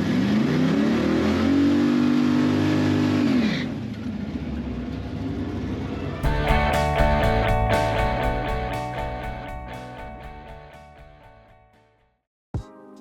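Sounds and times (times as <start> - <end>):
car engine revving and idling: 0.0 - 8.4.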